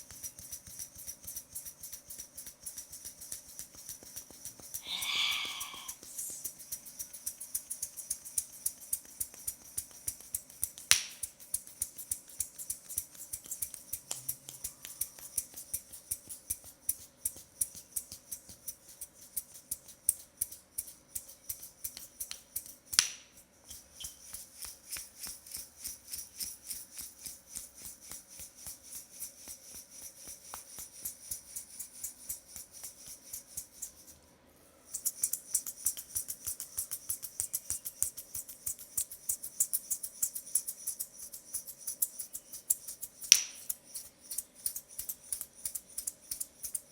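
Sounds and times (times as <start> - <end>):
rapid crisp tapping clicks: 0.0 - 4.8, 34.9 - 46.9.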